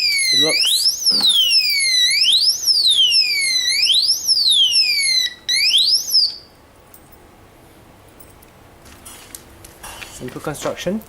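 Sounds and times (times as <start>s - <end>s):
electronic alarm siren wailing: 0.0s - 6.5s.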